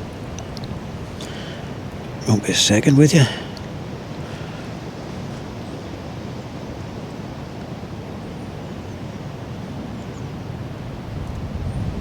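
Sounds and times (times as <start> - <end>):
wind buffeting microphone: 10.6 - 12.0.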